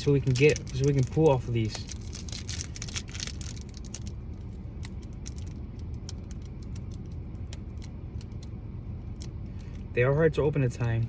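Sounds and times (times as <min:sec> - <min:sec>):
foil wrapper crinkling: 0:00.0 - 0:08.4
steady low rumble: 0:00.0 - 0:11.0.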